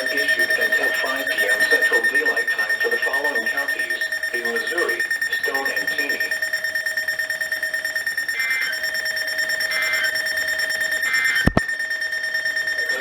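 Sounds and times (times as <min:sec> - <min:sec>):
steady high-pitched tone: 0:00.0 - 0:13.0
electronic alert beeps: 0:08.3 - 0:11.8.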